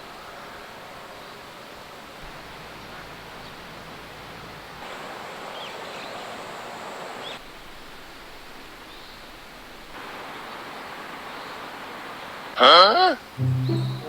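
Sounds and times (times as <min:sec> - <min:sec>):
rushing outdoor ambience: 0:00.0 - 0:08.8
faint high chirps: 0:13.4 - 0:14.0.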